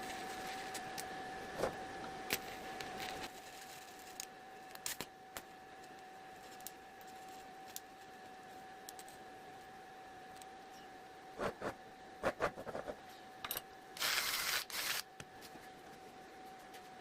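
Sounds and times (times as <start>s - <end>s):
welding electrical whine: 0.0s - 9.2s, 14.0s - 15.2s
welding hiss: 14.0s - 15.0s.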